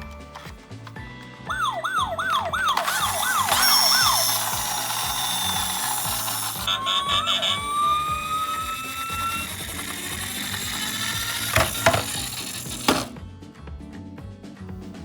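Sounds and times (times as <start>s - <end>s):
toy siren wailing: 1.5s - 13.1s.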